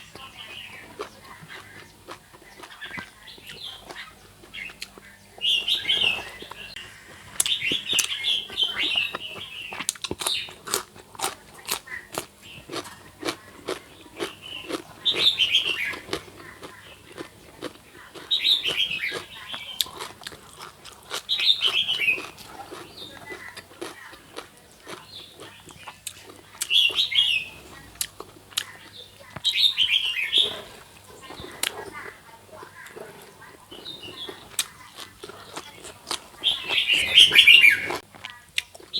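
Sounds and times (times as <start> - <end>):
birds chirping: 0.0 - 38.9
chewing crunchy food: 0.0 - 38.9.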